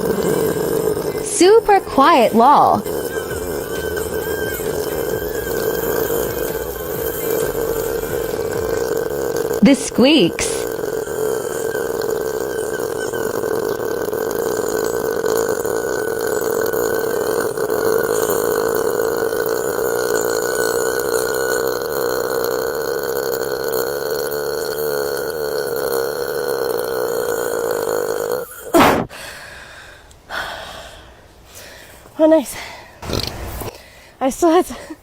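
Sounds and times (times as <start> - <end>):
woman burping: 0.0 - 29.1
woman choking: 0.0 - 29.1
woman speaking: 1.2 - 2.8, 9.6 - 10.7, 32.2 - 32.6, 34.2 - 35.0.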